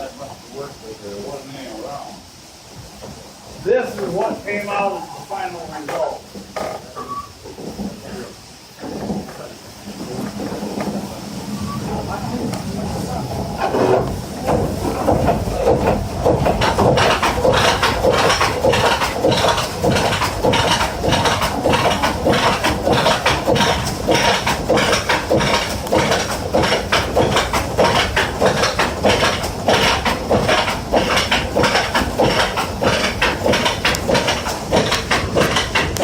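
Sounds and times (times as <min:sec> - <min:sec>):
saw blade rasping through log: 0:13.6 - 0:36.0
wooden frame knocking and clattering: 0:13.7 - 0:36.0.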